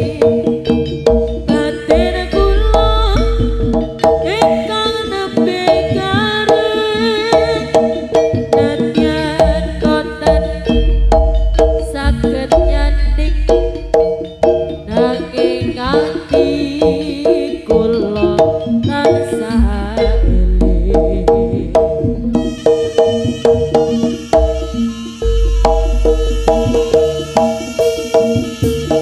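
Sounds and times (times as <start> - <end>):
hand-drum strokes: 0.0 - 29.0
wavering melody line: 0.0 - 29.0
deep low bass: 9.1 - 15.0, 19.6 - 22.6, 23.7 - 27.8
ringing gong-chime notes: 22.3 - 29.0.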